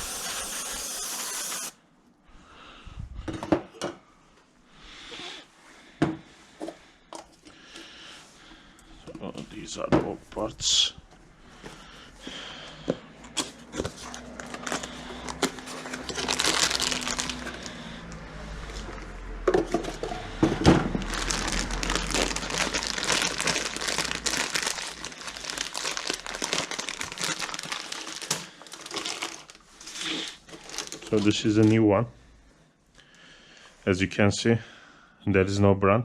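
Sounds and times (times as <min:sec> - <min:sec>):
packaging crinkling and rustling: 0:13.4 - 0:17.8, 0:20.9 - 0:31.8.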